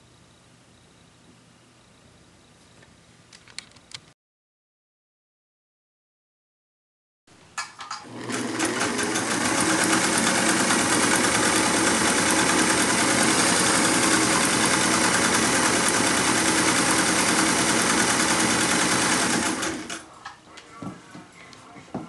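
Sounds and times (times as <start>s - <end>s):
sewing machine stitching: 7.8s - 20.0s.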